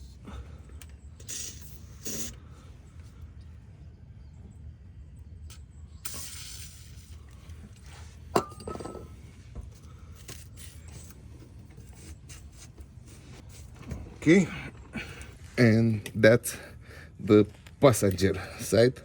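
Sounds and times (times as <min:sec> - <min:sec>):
aerosol spray hiss: 0:01.2 - 0:02.4
handling and scraping noises: 0:06.2 - 0:16.1.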